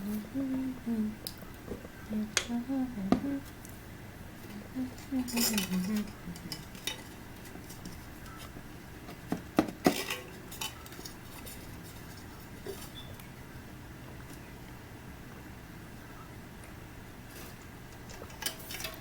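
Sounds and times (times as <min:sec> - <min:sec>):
food packaging rustling: 0:04.4 - 0:13.2.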